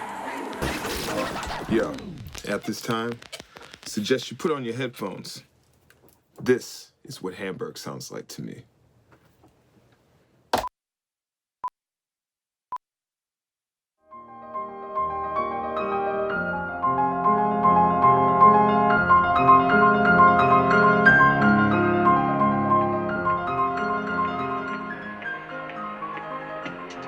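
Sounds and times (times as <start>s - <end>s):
piano-led music: 14.1s - 27.0s.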